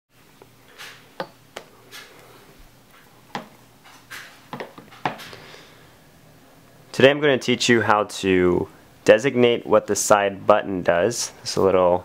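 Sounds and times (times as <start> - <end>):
sharp clicks and knocks: 2.9 - 5.4.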